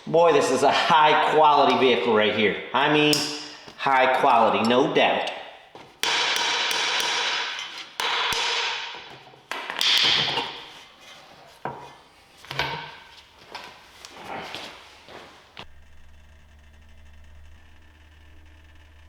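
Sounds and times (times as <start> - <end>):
metal clanking hits: 3.0 - 10.8
metal parts and tools clinking: 3.1 - 6.0.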